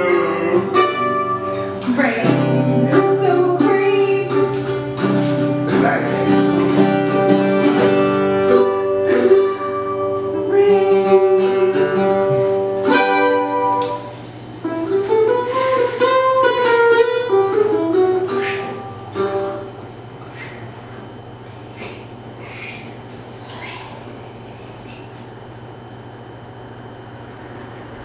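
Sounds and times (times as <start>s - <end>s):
acoustic guitar chords: 0.0s - 20.2s.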